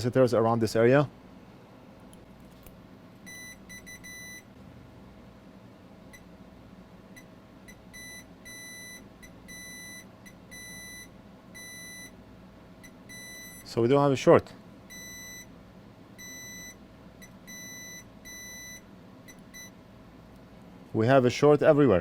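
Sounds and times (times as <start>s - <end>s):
multimeter beeping: 3.2s - 4.5s, 7.2s - 12.2s, 12.8s - 13.7s, 14.9s - 15.5s, 16.2s - 19.7s.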